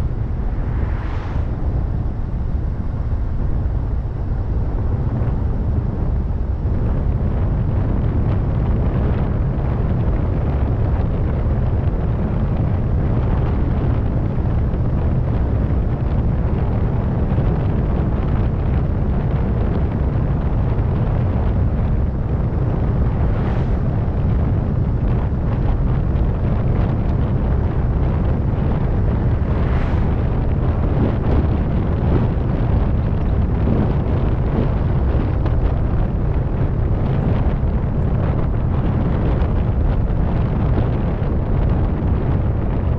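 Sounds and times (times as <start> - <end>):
faint higher sounds: 0.0 - 2.8
car engine and road rumble: 0.0 - 42.9
wind buffeting microphone: 0.0 - 42.9.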